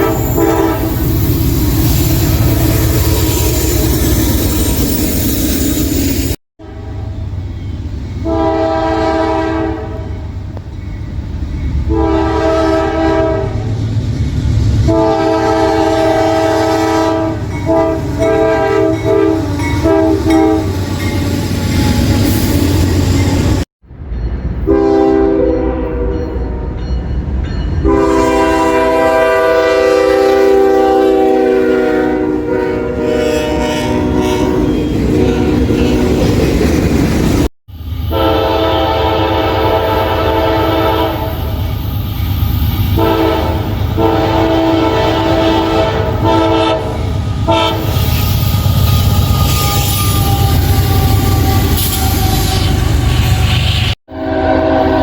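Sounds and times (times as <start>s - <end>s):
train air horn chord: 0.0s - 1.0s, 6.6s - 7.2s, 8.2s - 10.1s, 11.9s - 13.7s, 14.8s - 20.8s, 24.7s - 26.7s, 27.8s - 36.1s, 38.1s - 41.6s, 43.0s - 52.9s, 54.1s - 55.0s
moving train rumble: 0.0s - 55.0s.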